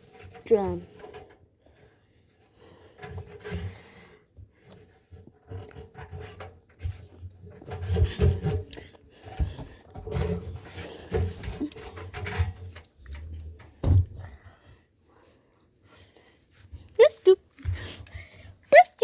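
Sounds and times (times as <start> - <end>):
rubbing and scraping: 0.0 - 13.9
handling knocks and thuds: 13.3 - 14.4.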